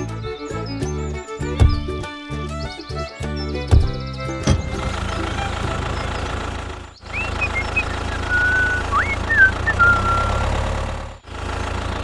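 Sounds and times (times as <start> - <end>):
small tractor engine droning: 0.0 - 12.0
thin whistling chirps: 7.0 - 10.5.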